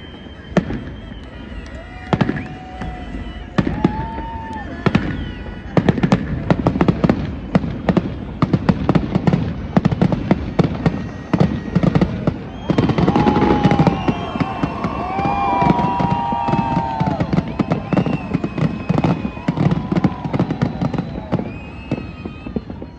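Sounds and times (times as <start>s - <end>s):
fireworks bangs and crackles: 0.0s - 22.9s
wavering whistling fireworks: 0.0s - 22.9s.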